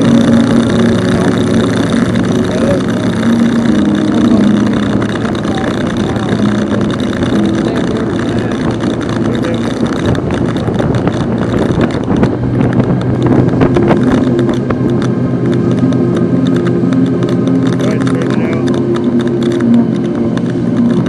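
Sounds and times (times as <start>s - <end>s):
outboard motor running: 0.0s - 21.0s
water: 0.0s - 21.0s
wind: 0.0s - 21.0s.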